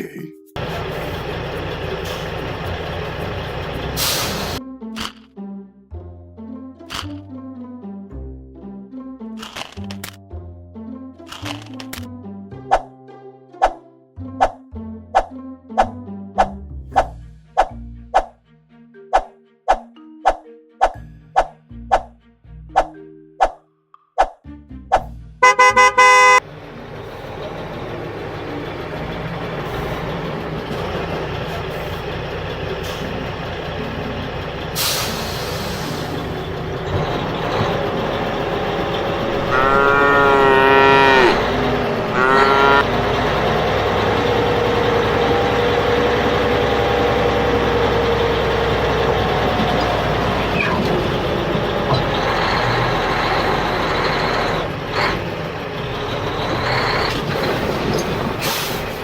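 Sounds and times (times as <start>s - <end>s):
engine-like running noise: 0.6s - 5.2s, 25.4s - 59.0s.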